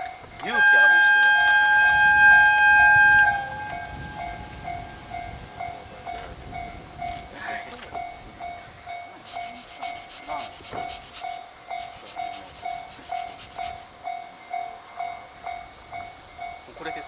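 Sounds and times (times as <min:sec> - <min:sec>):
level-crossing warning bell: 0:00.0 - 0:09.7, 0:11.3 - 0:17.0
rapid rhythmic high hissing: 0:03.9 - 0:17.0.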